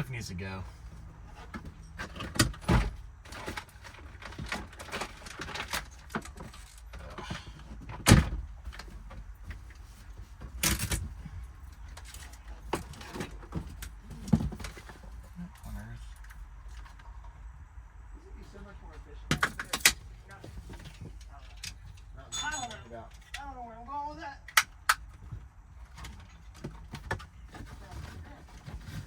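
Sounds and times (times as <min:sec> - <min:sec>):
rustling and scraping: 0:00.1 - 0:17.6, 0:18.4 - 0:23.6, 0:25.0 - 0:29.0
knocks and clunks in car cabin: 0:00.9 - 0:15.4.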